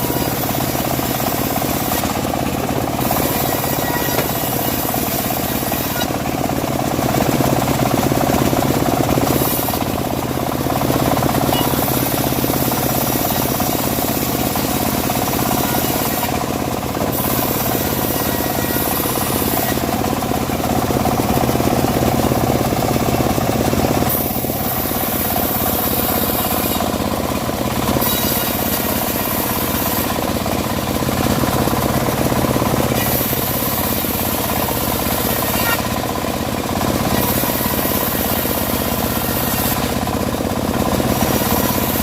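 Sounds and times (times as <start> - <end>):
bandsaw mill drone: 0.0 - 42.0
saw cutting hiss: 2.9 - 6.2, 17.1 - 19.9, 24.1 - 27.0, 28.0 - 30.2.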